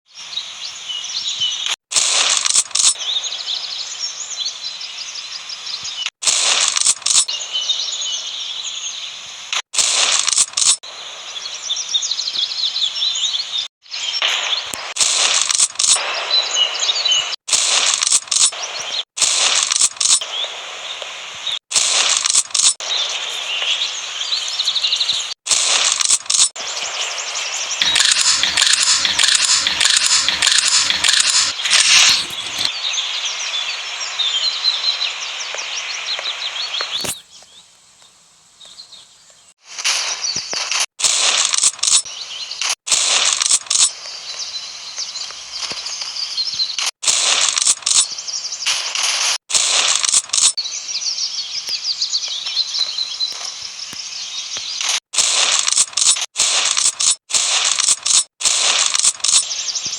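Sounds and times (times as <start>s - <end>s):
shotgun sharp metallic bursts: 27.8s - 32.7s
birds chirping: 27.8s - 32.8s, 36.2s - 39.4s.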